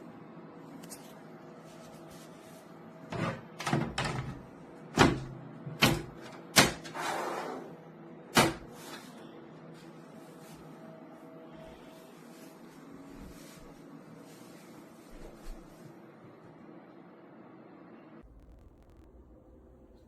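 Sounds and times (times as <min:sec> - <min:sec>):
low steady hum: 0:09.1 - 0:20.0.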